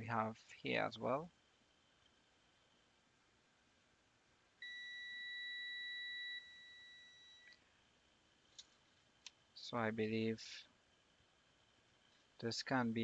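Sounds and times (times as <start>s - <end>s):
multimeter continuity beep: 4.6s - 7.6s.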